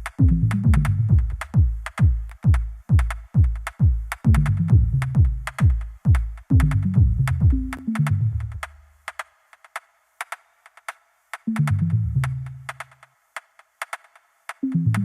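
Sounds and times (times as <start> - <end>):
bass line: 0.0 - 1.9, 4.3 - 5.8, 6.5 - 8.7, 11.5 - 12.7, 14.6 - 15.0
electronic music: 0.0 - 2.2, 4.2 - 8.8, 11.5 - 13.0, 14.6 - 15.0
fast kick drum beat: 0.0 - 8.7
ticking hi-hats: 0.0 - 15.0.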